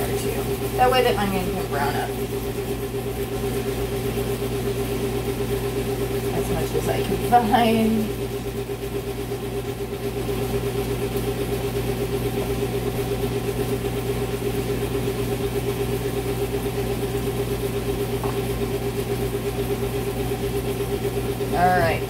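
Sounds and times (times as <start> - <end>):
motor humming: 0.0 - 22.0.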